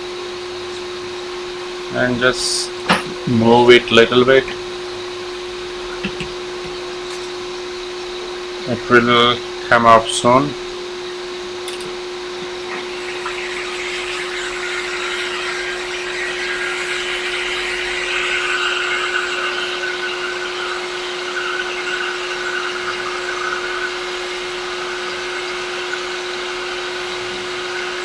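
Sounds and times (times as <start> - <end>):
constant hum: 0.0 - 28.0
hot air station blowing: 0.0 - 28.0.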